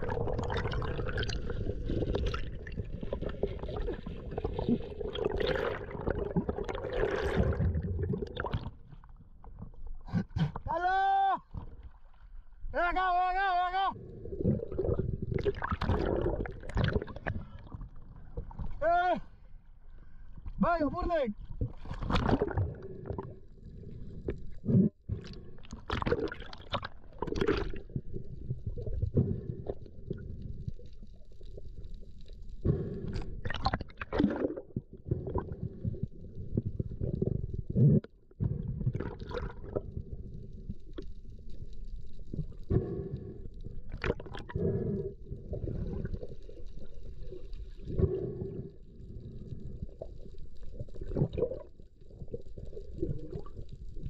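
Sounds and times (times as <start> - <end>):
underwater gurgling and bubbling: 0.0 - 10.7, 14.0 - 18.8, 21.4 - 54.0.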